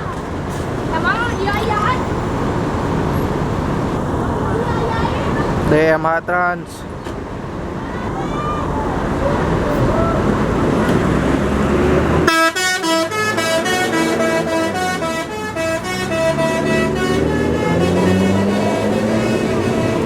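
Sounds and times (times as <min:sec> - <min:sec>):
bus engine: 0:00.0 - 0:20.0
traffic noise: 0:00.0 - 0:20.0
multi-tone bus horn tune: 0:12.2 - 0:20.0.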